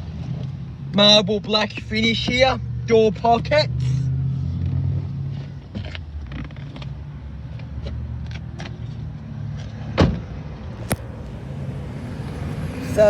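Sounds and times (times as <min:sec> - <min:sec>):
steady low rumble: 0:10.7 - 0:13.0.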